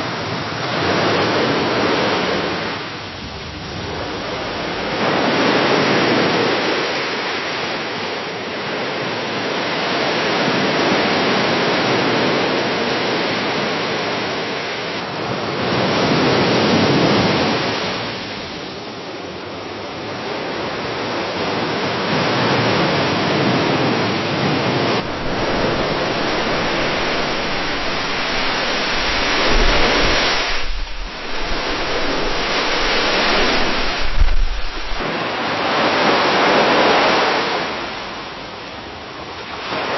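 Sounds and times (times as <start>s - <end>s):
small waves splashing against a dock: 0.0s - 39.9s
low rumble: 2.9s - 6.8s, 25.0s - 35.0s.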